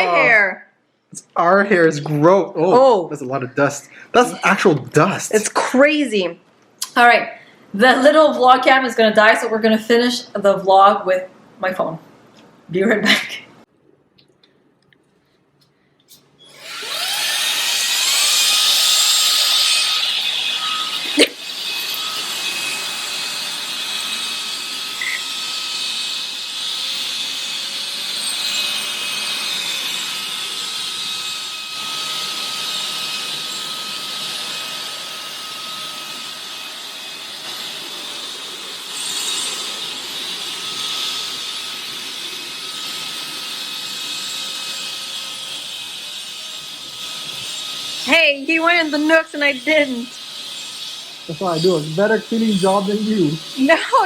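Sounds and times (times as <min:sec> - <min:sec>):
stick vacuum motor whine: 0:16.4 - 0:25.9, 0:47.2 - 0:54.0.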